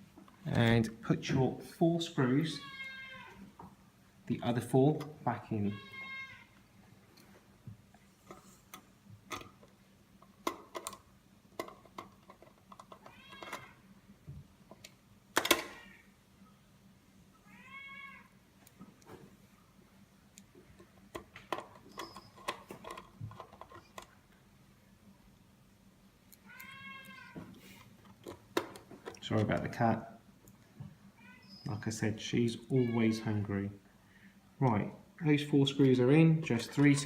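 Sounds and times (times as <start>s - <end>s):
cat meowing: 2.6s - 3.5s, 5.7s - 6.6s, 13.1s - 13.8s, 17.4s - 18.3s, 26.4s - 27.5s, 31.2s - 31.6s.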